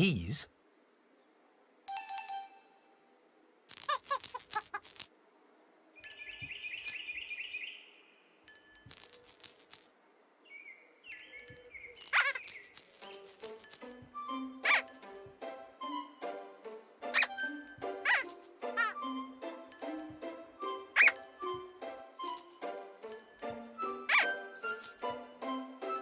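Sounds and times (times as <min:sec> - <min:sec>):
tinkling chimes and rattles: 0:03.7 - 0:05.1, 0:06.0 - 0:07.6, 0:08.5 - 0:10.0, 0:11.1 - 0:15.7, 0:17.2 - 0:19.0, 0:19.7 - 0:26.0
wavering high tone: 0:19.8 - 0:22.6.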